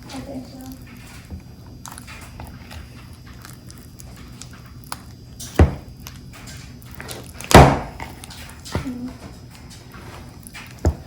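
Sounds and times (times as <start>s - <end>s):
knife mixing sticky butter: 0.0s - 11.0s
loud knock: 7.5s - 8.0s.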